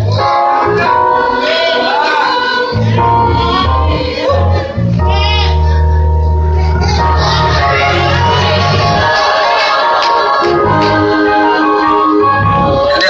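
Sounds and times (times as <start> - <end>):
gospel voices singing: 0.0 - 13.0
low bass line: 2.7 - 9.5, 10.4 - 13.0.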